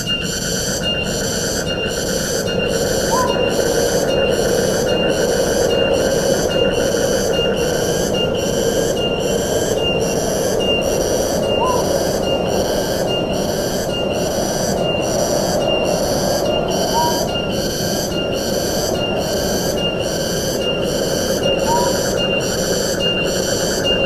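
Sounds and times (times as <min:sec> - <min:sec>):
insect high-pitched pulsing call: 0:00.0 - 0:24.0
wind through trees: 0:00.0 - 0:24.0.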